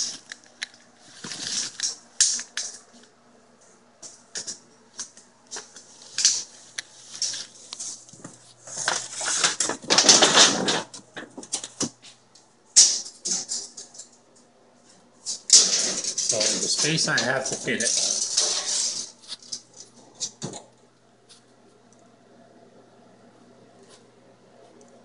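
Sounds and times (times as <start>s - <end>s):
rattling scrape: 15.3s - 19.6s
tools and parts clicking: 15.3s - 20.6s.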